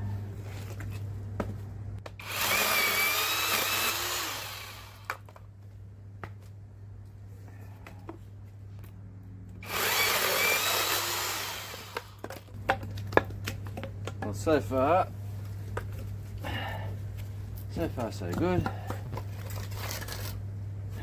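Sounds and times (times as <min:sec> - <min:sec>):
electric chainsaw motor whine: 0:02.2 - 0:05.1, 0:09.6 - 0:12.2.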